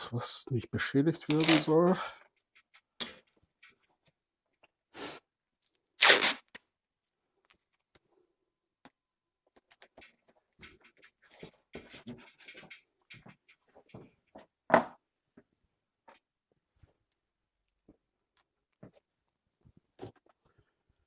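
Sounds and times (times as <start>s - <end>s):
masking tape ripping: 1.3s - 1.7s, 6.0s - 6.6s.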